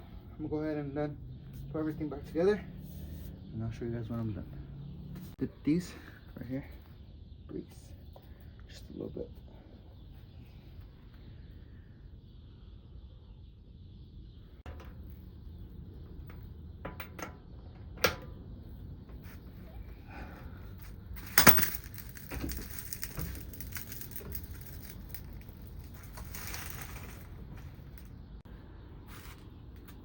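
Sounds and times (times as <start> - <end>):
metal parts knocking and clinking: 21.2 - 26.8.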